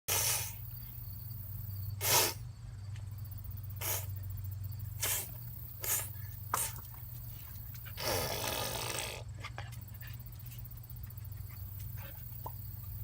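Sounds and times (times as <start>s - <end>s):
toddler making breathy hissing noises: 0.1s - 0.6s, 2.0s - 2.4s, 3.8s - 4.2s, 5.0s - 6.8s
steady low hum: 0.1s - 13.0s.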